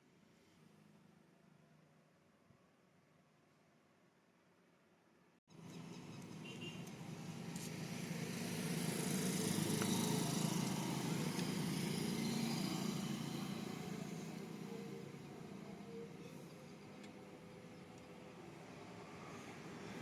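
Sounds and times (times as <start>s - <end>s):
vehicle engine running: 5.5s - 17.6s.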